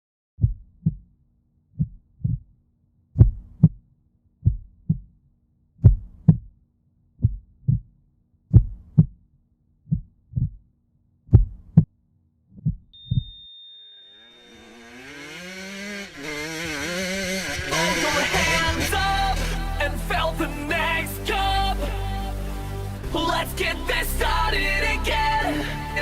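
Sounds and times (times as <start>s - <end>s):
heartbeat thumps: 3.2s - 3.8s, 4.4s - 5.1s, 5.8s - 6.5s, 7.2s - 7.9s, 8.5s - 9.2s, 9.9s - 10.6s, 11.3s - 11.9s.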